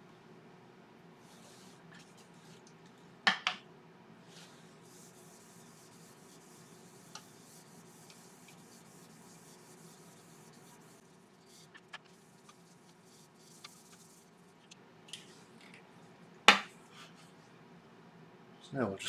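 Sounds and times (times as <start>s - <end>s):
paper towel rubbing wood: 4.3s - 14.3s.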